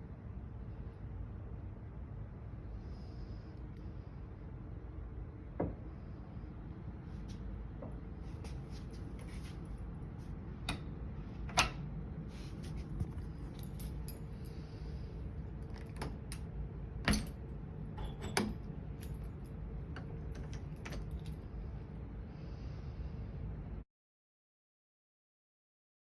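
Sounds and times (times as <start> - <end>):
keys jangling: 12.7 - 15.0, 15.6 - 21.5
deadbolt metallic clicks: 15.7 - 17.4.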